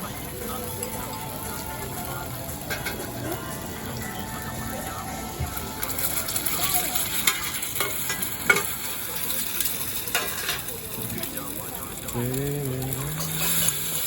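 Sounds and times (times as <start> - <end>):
omelette sizzling in a pan: 0.0 - 14.0.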